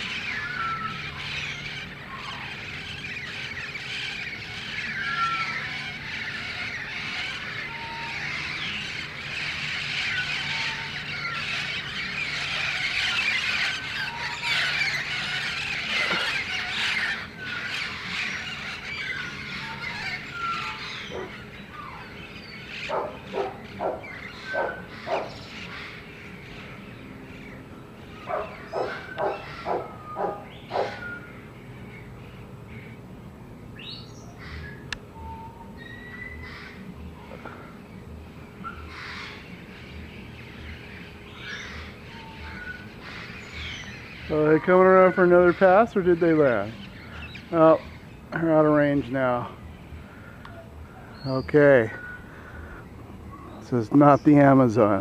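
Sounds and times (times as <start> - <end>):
parrots screeching: 0.0 - 31.6, 33.8 - 37.8, 38.6 - 49.5.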